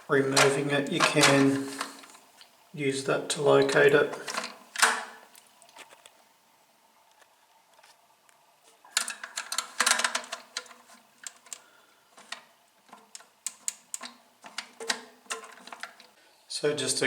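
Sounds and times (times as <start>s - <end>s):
plastic parts clicking and knocking: 0.0s - 2.2s, 3.6s - 6.1s, 8.9s - 16.2s.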